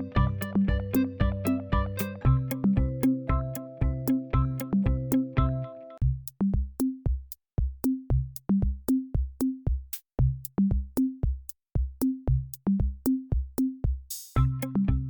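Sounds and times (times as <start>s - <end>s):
electronic music with drum-machine beat: 0.0s - 5.7s.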